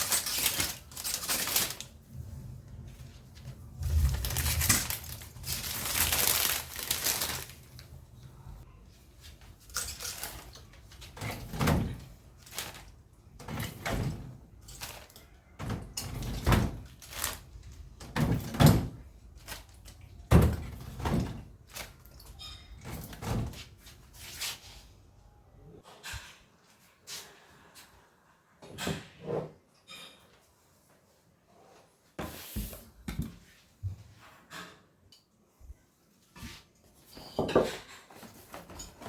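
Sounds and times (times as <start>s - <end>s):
noisy rustling: 0.0s - 8.6s.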